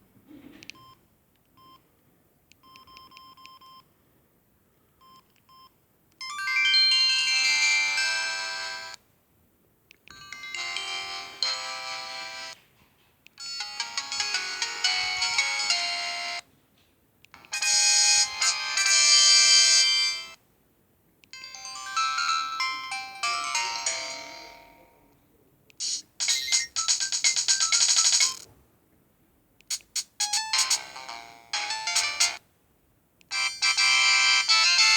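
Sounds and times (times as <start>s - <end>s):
electronic ringtone melodies: 6.3s - 9.0s, 10.2s - 12.6s, 13.4s - 16.4s, 17.4s - 20.4s, 21.4s - 25.0s, 25.8s - 28.4s, 30.2s - 32.4s, 33.3s - 34.9s.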